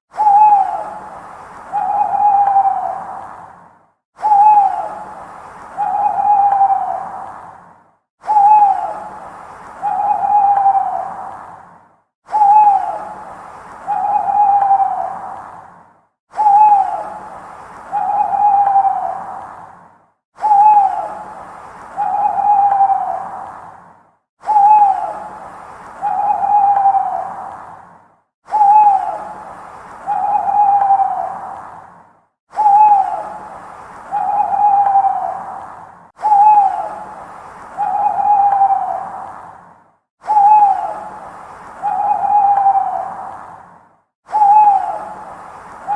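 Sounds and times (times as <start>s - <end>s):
owl hooting: 0.2s - 3.2s, 4.2s - 7.3s, 8.2s - 11.4s, 12.3s - 15.4s, 16.4s - 19.4s, 20.4s - 23.5s, 24.4s - 27.6s, 28.5s - 31.6s, 32.5s - 39.4s, 40.2s - 43.4s, 44.3s - 45.9s
faint hiss: 0.2s - 45.9s.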